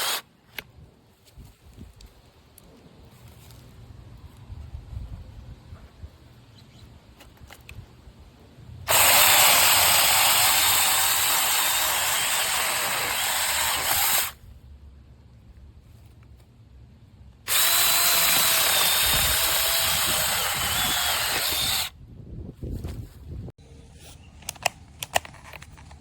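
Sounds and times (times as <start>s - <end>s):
electric mini chainsaw running: 0.0s - 0.2s, 8.9s - 14.4s, 17.5s - 21.9s.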